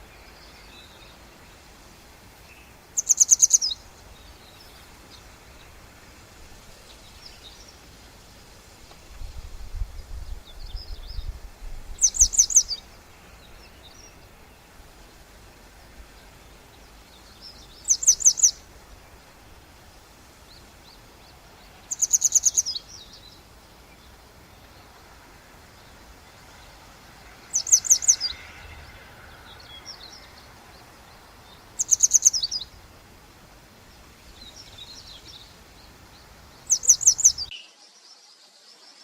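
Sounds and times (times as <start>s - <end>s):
songbird singing: 0.0s - 39.0s.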